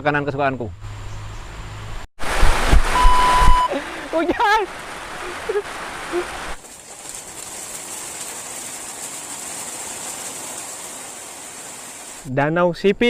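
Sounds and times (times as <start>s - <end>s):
outdoor hiss: 2.2s - 12.3s
insects buzzing: 6.6s - 12.3s.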